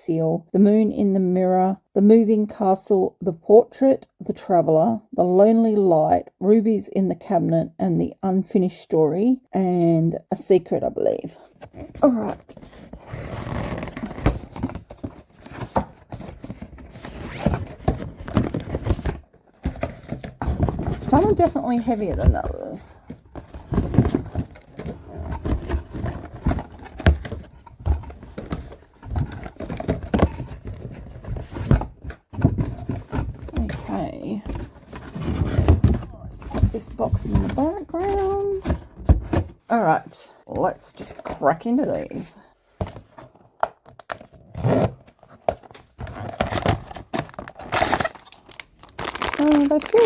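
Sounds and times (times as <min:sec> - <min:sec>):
cardboard boxes handled and shaken: 0:11.3 - 0:50.0
packaging tearing and crinkling: 0:46.0 - 0:50.0.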